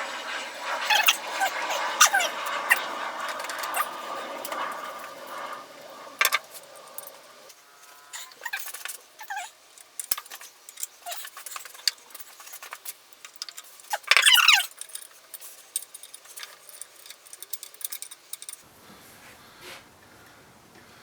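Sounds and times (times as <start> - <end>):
metal parts clinking and knocking: 9.8 - 18.6.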